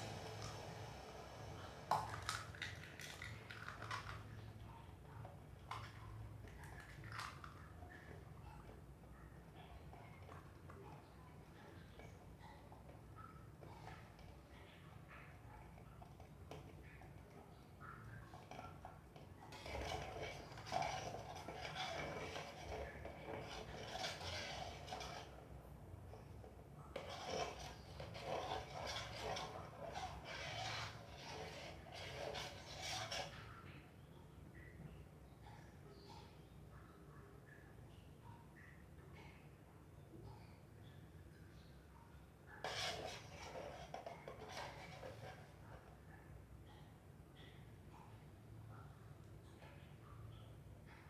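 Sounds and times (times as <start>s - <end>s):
kitchen utensils scraping: 0.0s - 4.5s, 19.5s - 25.6s, 27.0s - 33.6s, 42.6s - 46.0s.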